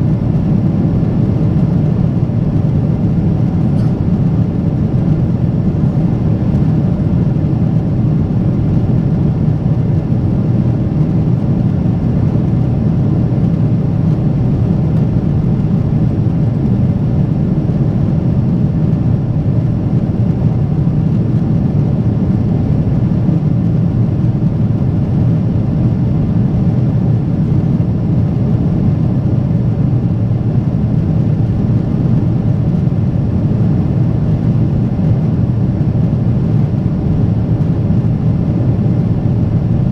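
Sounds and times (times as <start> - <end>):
jet engine cabin rumble: 0.0 - 39.9.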